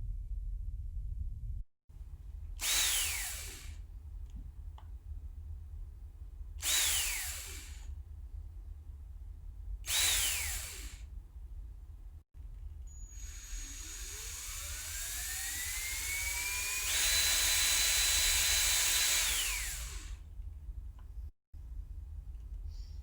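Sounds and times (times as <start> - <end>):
steady low hum: 0.0 - 23.0
electric drill whine: 2.6 - 3.8, 6.6 - 7.9, 9.9 - 11.0, 12.9 - 20.2.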